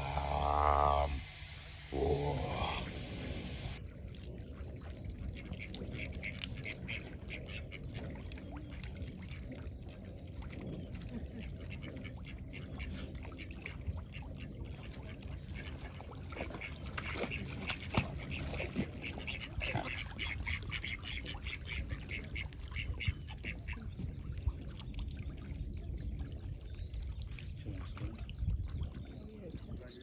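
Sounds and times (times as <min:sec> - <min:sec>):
birds calling: 0:00.0 - 0:03.8.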